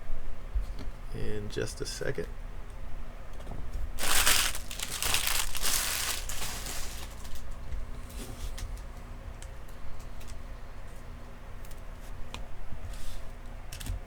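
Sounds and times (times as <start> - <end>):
wrapper tearing and crinkling: 4.0 - 7.6.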